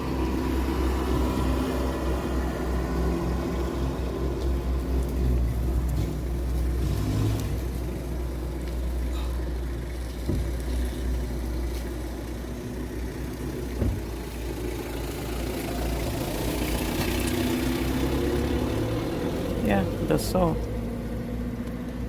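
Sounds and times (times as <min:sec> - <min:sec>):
light knocks: 0:10.2 - 0:10.6, 0:13.7 - 0:14.2.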